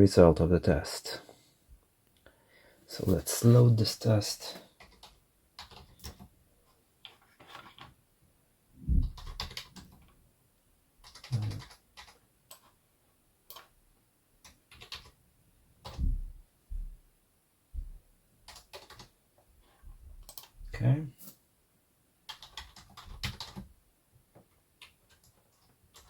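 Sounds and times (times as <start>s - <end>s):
dull thuds: 16.0s - 17.0s.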